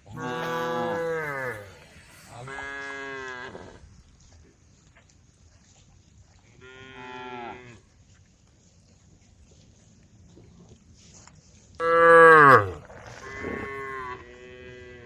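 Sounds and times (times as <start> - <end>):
cow mooing: 0.0 - 3.8, 11.8 - 15.0.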